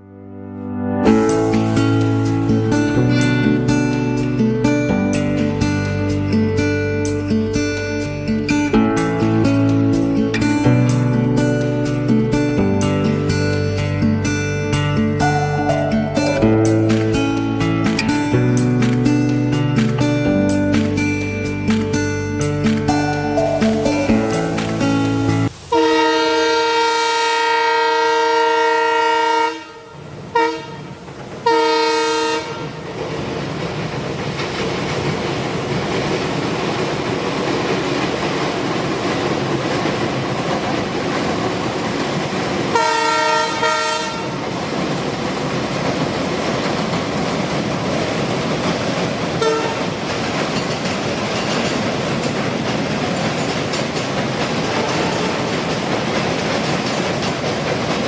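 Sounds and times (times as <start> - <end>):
train rumbling on rails: 1.1 - 58.0
train horn blasts: 25.6 - 32.8, 42.7 - 44.4, 49.4 - 49.9, 54.7 - 55.6.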